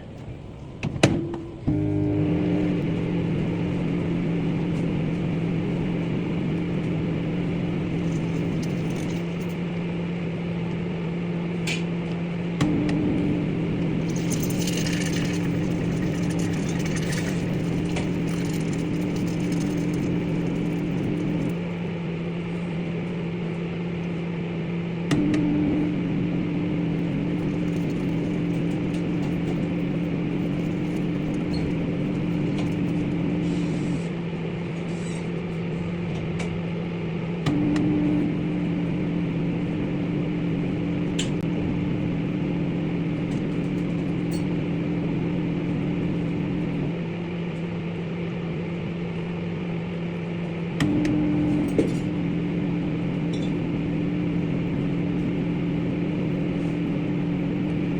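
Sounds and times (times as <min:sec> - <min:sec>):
microwave buzz: 0:00.0 - 0:57.9
microwave oven humming: 0:00.0 - 0:57.9.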